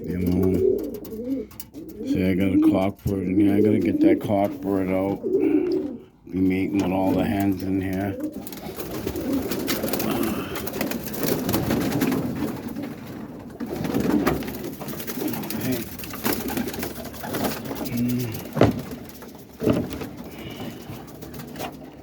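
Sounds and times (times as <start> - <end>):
pigeons cooing: 0.0 - 22.0
sharp knocks: 18.5 - 20.8.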